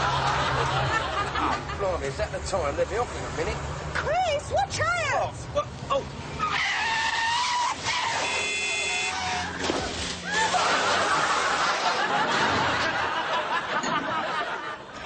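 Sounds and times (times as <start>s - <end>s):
studio audience laughing: 0.0s - 1.9s, 10.3s - 15.0s
tyres squealing: 6.3s - 12.1s.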